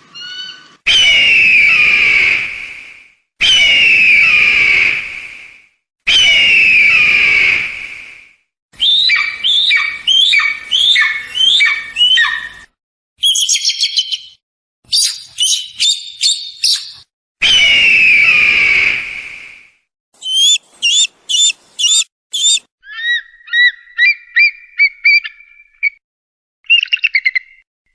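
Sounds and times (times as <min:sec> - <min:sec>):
eagle high rapid chattering: 0:20.2 - 0:22.6
eagle short sliding calls: 0:20.2 - 0:22.6.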